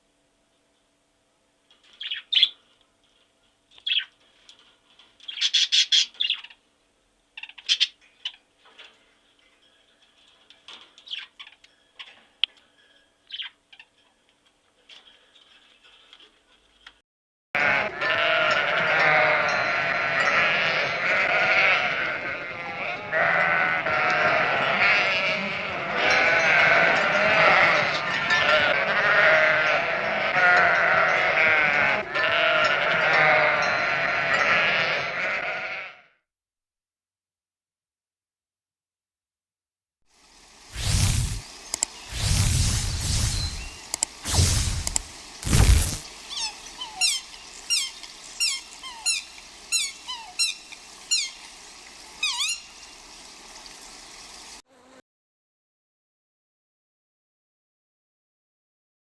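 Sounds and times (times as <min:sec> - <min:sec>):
flock of animals bleating: 0:17.6 - 0:36.2
faint clicks: 0:41.0 - 0:42.2, 0:43.1 - 0:46.5.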